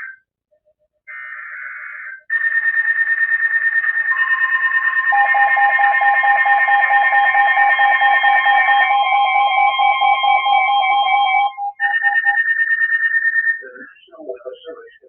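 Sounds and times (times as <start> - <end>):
rapidly pulsing high beep: 2.3 - 15.0
steady lower electronic tone: 4.1 - 15.0.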